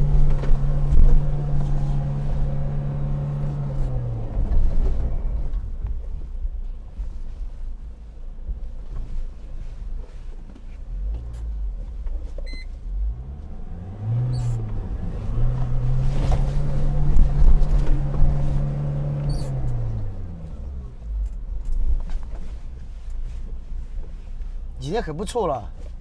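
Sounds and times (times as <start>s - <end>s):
diesel engine revving: 0.0s - 5.6s, 12.8s - 21.3s
low rumble: 0.0s - 10.1s, 10.7s - 24.8s.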